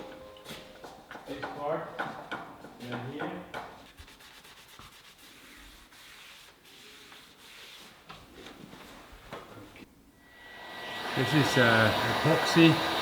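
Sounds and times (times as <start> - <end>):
sandpaper rasping: 3.8 - 8.0.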